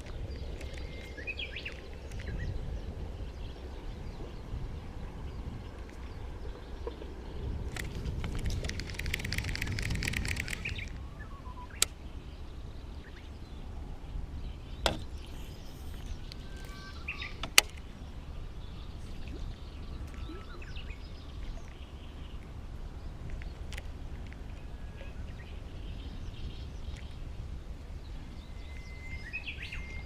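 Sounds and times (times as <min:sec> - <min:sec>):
rapid clicking: 0:07.7 - 0:10.9
faint bird calls: 0:14.8 - 0:22.3.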